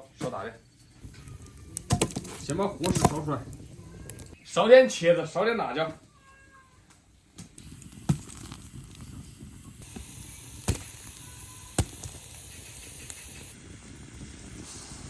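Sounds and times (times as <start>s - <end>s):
fire burning with rushing hiss: 1.0s - 4.4s, 6.8s - 15.0s
fire cracking pops: 1.0s - 4.4s, 6.8s - 14.6s.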